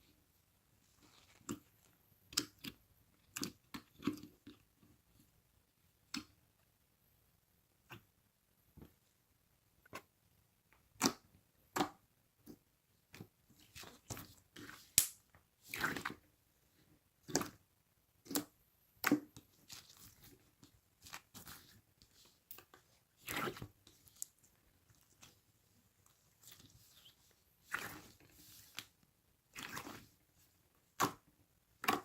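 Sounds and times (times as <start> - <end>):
slime squelching and popping: 10.8 - 16.3, 17.2 - 25.4, 26.1 - 32.0.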